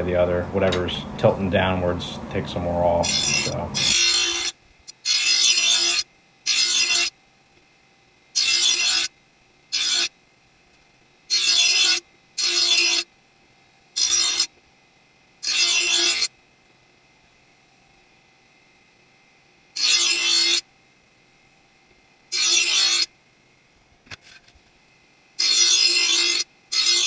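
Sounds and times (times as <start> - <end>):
grinding wheel humming: 0.0 - 4.5
blade grinding on grinding wheel: 0.0 - 7.1, 8.4 - 9.1, 9.8 - 10.1, 11.3 - 13.0, 14.0 - 14.5, 15.4 - 16.3, 19.8 - 20.6, 22.4 - 23.1, 25.4 - 27.0.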